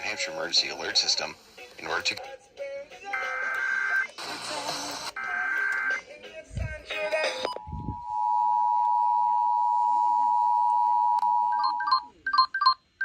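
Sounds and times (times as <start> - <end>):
broadcast audio: 0.0 - 12.2.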